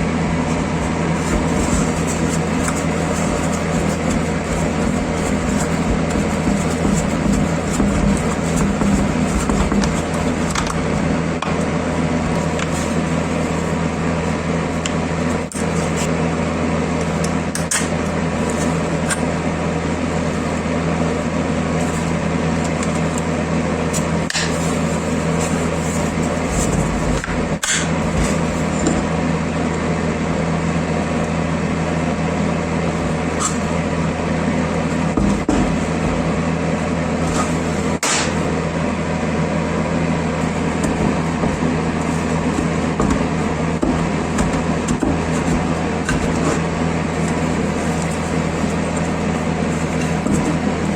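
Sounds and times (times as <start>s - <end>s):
electric motor humming: 0.0s - 14.4s.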